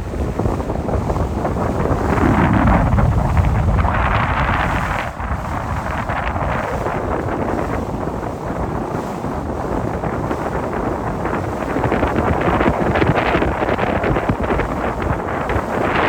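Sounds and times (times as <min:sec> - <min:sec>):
motorboat engine and water rushing: 0:00.0 - 0:16.0
wind buffeting microphone: 0:00.0 - 0:16.0.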